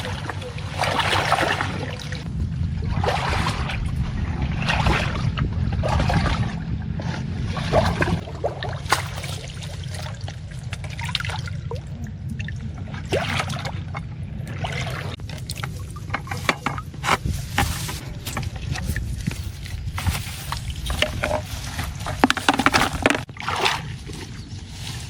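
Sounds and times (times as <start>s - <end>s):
water splashing and dripping: 0.0s - 24.3s
low rumble: 0.0s - 25.0s.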